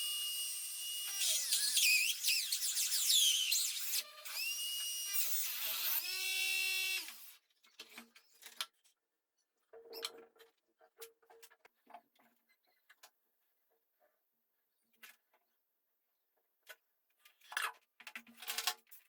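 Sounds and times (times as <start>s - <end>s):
power drill motor whining: 0.0s - 7.4s.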